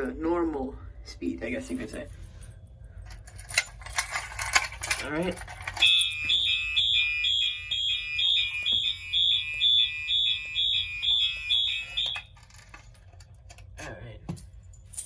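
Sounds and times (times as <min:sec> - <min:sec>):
fire alarm horn beeping: 0:05.8 - 0:12.4.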